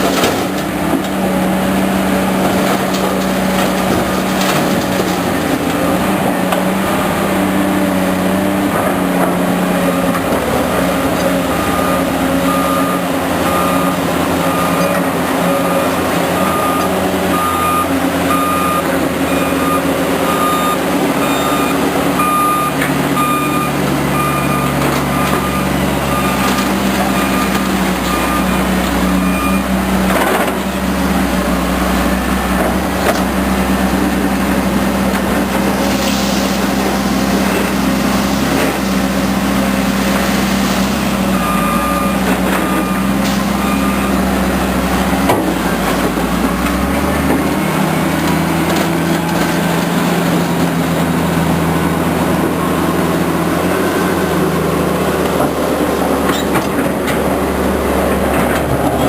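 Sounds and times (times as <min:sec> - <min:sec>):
heavy diesel engines running: 0:00.0 - 0:59.0
reversing alarm beeping: 0:11.4 - 0:29.8, 0:41.3 - 0:44.4.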